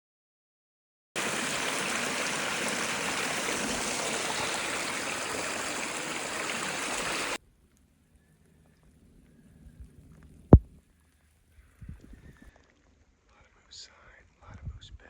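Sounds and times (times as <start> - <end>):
stream water rushing: 1.2 - 7.4.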